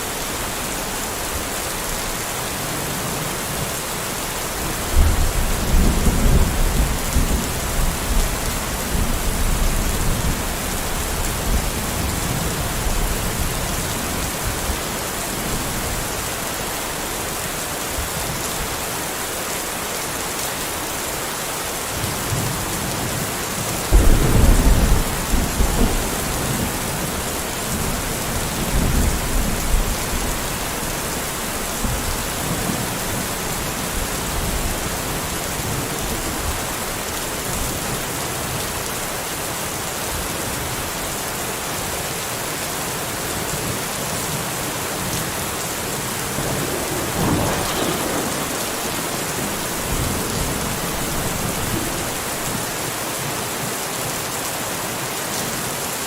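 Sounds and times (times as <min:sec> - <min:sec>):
steady rainfall: 0:00.0 - 0:56.0
low thunder rumbles: 0:04.8 - 0:14.8, 0:23.9 - 0:38.0, 0:45.0 - 0:52.8.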